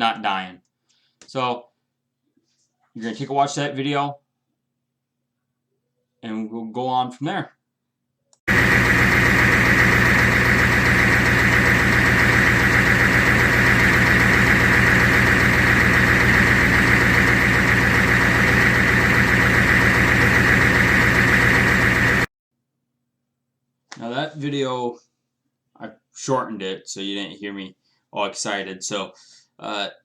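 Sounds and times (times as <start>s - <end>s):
diesel engine idling: 8.5s - 22.3s.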